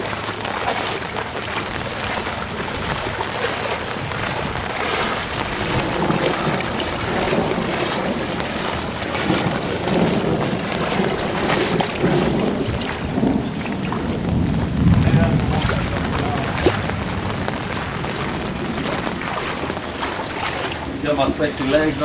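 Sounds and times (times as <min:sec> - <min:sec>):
low rumbling gusts: 0:00.0 - 0:22.0
rain falling: 0:00.0 - 0:22.0.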